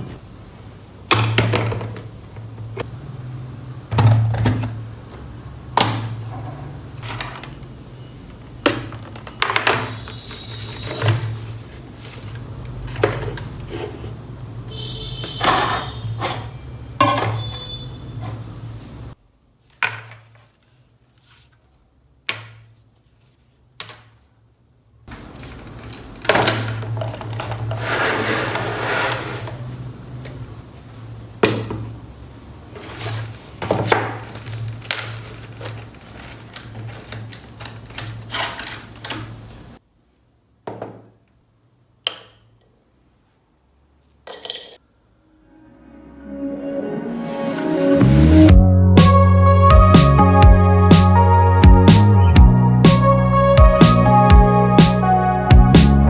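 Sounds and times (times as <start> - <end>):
objects knocking and thunking: 1.1 - 2.6, 3.9 - 7.5
soft background music: 45.2 - 56.0.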